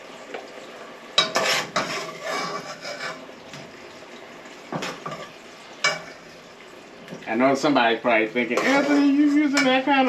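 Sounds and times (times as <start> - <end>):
oil sizzling: 0.0 - 10.0
spoon scraping and clattering in pot: 1.2 - 3.3, 8.6 - 9.8.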